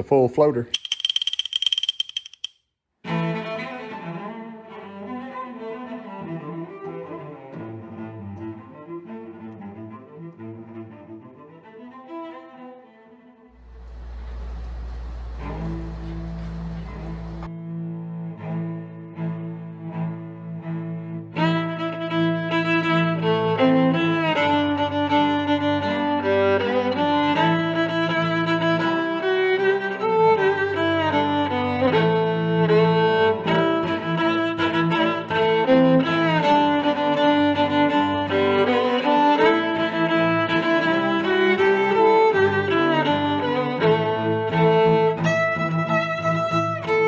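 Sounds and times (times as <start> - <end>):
violin and cello melody: 3.1 - 47.0.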